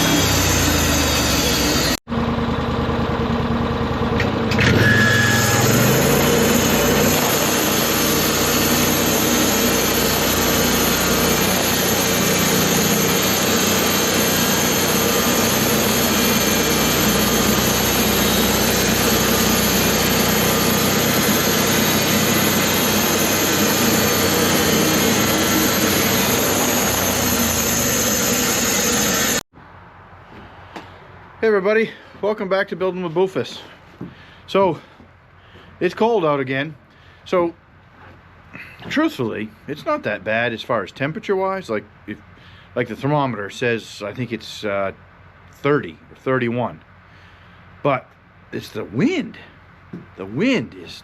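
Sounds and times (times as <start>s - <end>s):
sawmill engine sawing wood: 0.0s - 29.4s.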